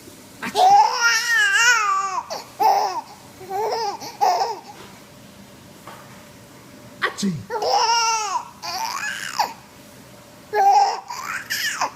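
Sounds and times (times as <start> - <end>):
baby laughing and babbling: 0.4 - 4.8, 7.5 - 9.6, 10.5 - 11.9.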